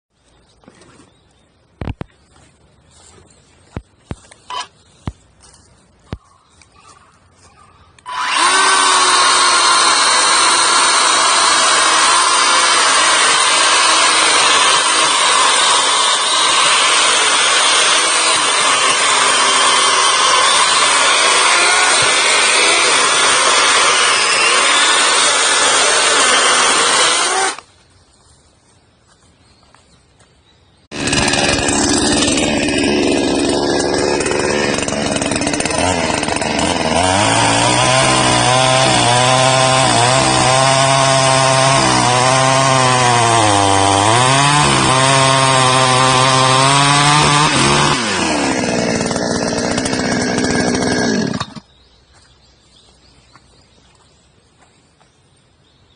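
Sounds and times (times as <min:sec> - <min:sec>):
chainsaw cutting wood: 0:04.4 - 0:04.7, 0:08.0 - 0:27.7, 0:30.9 - 0:51.7.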